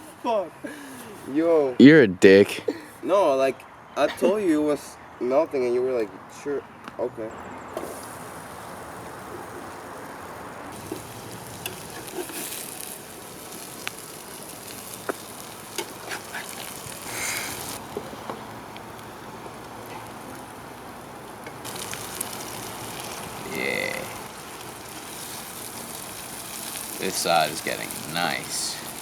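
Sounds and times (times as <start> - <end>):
food sizzling in a pan: 7.8 - 29.0.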